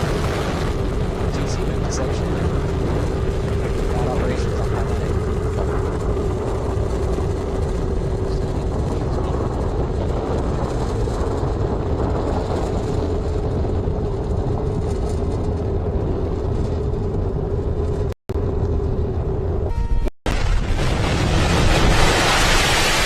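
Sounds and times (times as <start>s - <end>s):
rocket engines roaring: 0.0s - 23.0s
held tone: 19.5s - 20.2s.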